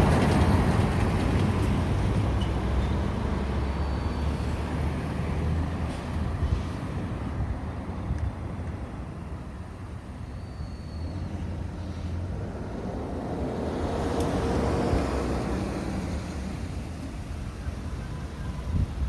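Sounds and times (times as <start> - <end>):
steady low traffic rumble: 0.0 - 19.0
car passing: 11.5 - 17.8.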